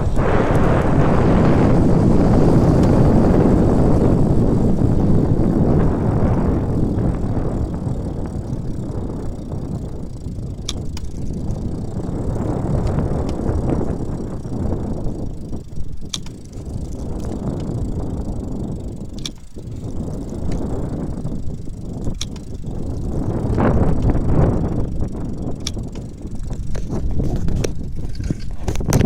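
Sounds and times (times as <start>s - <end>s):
bike rolling noise: 0.0s - 29.0s
hub motor clicks: 0.0s - 29.0s
wind: 0.0s - 29.0s.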